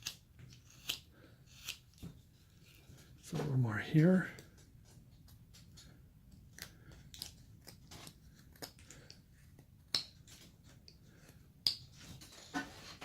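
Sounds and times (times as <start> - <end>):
carving tool cutting wood: 0.0 - 2.1.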